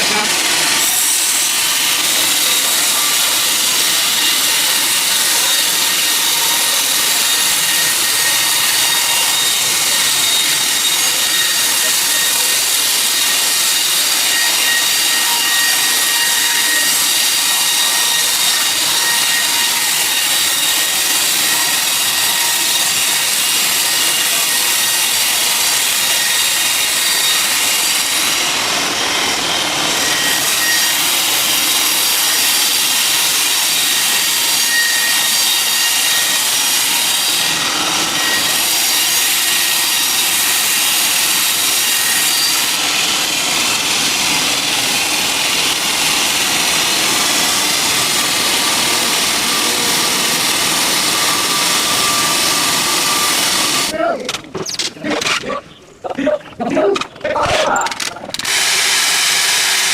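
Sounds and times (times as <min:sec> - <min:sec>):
saw blade hissing through wood: 0:00.0 - 0:29.3, 0:57.7 - 0:59.9.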